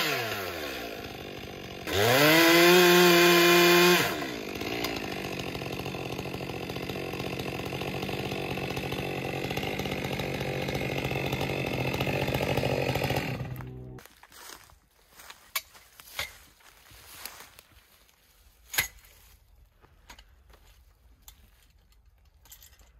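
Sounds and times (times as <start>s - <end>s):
chainsaw revving and running: 0.0s - 14.1s.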